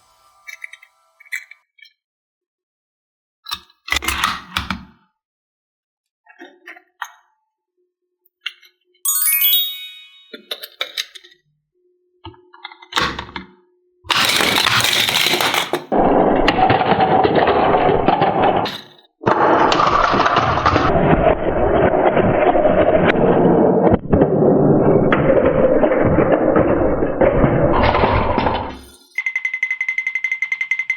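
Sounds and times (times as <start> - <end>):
chime-like sound effect: 9.1 - 10.8.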